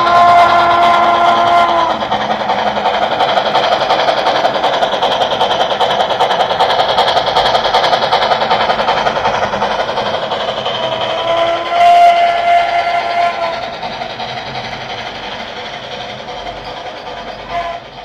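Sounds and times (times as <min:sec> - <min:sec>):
model train rattling on track: 0:00.0 - 0:18.0
wheels clicking: 0:00.0 - 0:18.0.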